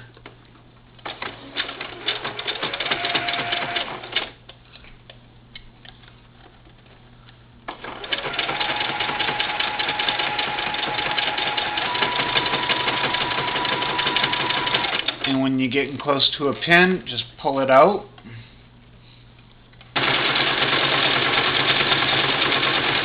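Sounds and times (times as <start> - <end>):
sewing machine motor whine: 1.0 - 4.3, 7.7 - 15.3, 20.0 - 23.0.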